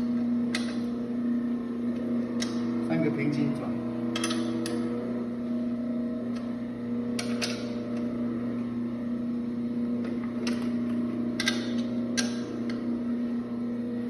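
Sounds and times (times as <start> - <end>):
electric motor humming: 0.0 - 14.0
wrench clicks: 4.2 - 4.8.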